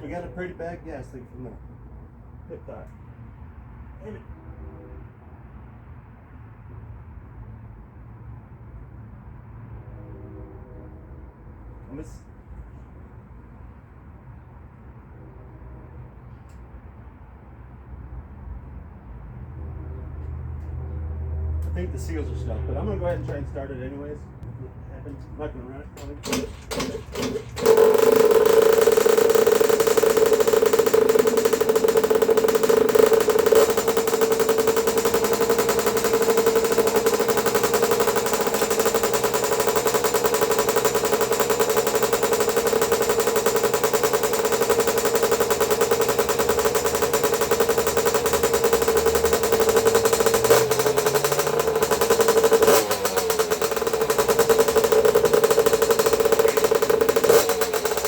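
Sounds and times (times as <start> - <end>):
small motorbike engine running: 25.9 - 58.0.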